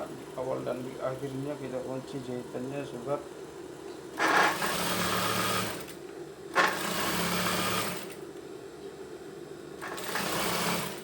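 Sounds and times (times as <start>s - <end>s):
sewing machine stitching: 4.2s - 8.2s, 9.8s - 11.0s.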